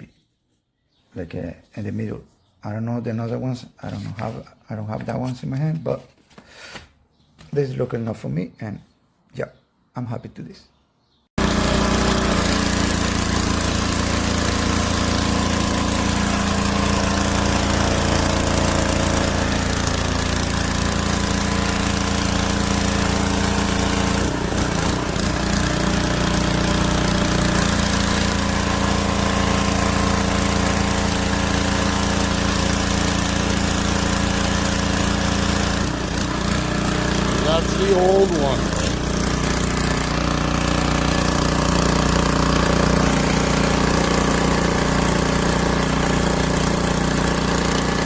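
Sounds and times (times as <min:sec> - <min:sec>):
pressure washer droning: 0:11.4 - 0:48.0.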